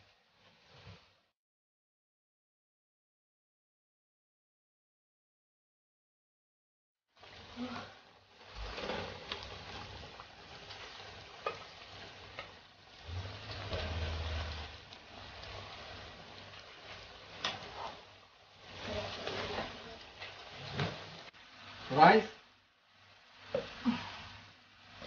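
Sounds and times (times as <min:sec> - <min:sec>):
food sizzling in a pan: 0:07.1 - 0:25.0.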